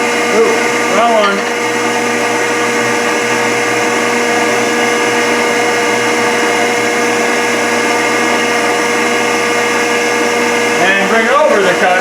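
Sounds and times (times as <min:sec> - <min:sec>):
hydraulic pump whine: 0:00.0 - 0:12.0
mechanical hum: 0:00.0 - 0:12.0.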